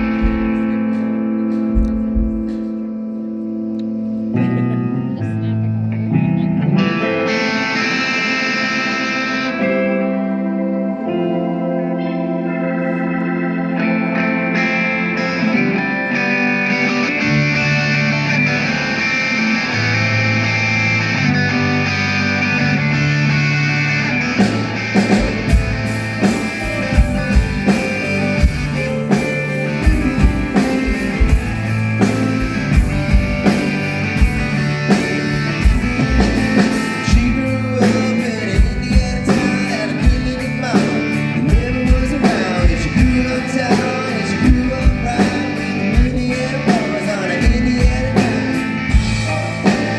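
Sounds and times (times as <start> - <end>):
drum kit steady beat: 0.0 - 2.9, 24.4 - 49.9
live band playing: 0.0 - 49.9.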